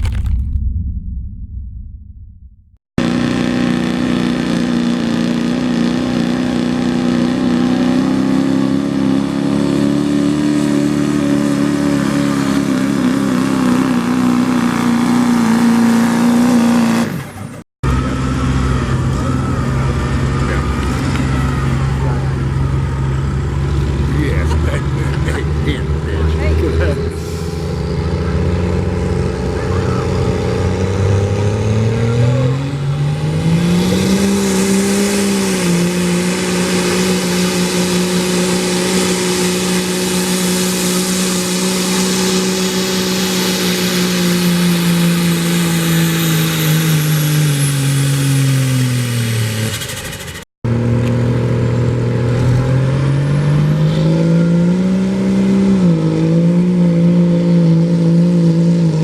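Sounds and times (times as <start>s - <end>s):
diesel truck engine revving: 3.0s - 59.0s.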